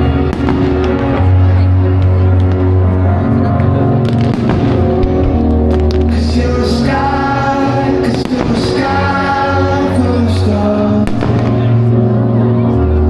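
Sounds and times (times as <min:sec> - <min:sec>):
firework bangs: 0:00.0 - 0:02.7, 0:04.0 - 0:09.4, 0:11.0 - 0:11.9
loud music with singing: 0:00.0 - 0:13.0.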